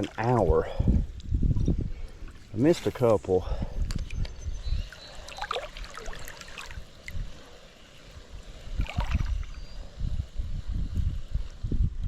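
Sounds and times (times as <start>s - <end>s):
short water splashes: 0.0s - 0.9s, 5.1s - 7.2s, 8.8s - 9.6s
river water trickling: 0.0s - 9.8s
wind rumble on microphone: 0.0s - 12.0s.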